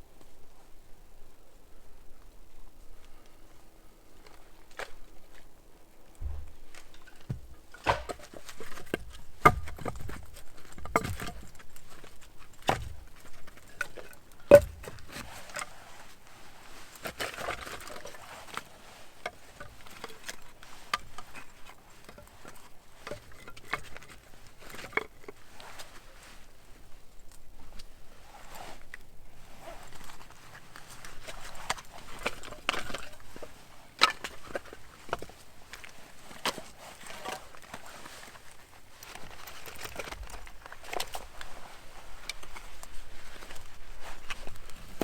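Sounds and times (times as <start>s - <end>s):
knocks and dull thuds: 6.2s - 8.4s.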